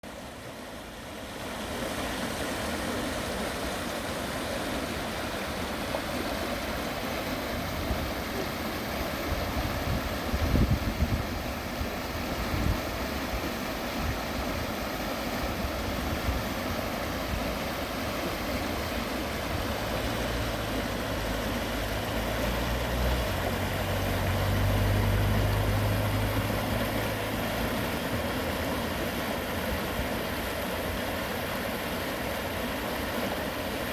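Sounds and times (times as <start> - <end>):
stream water rushing: 0.0 - 33.9.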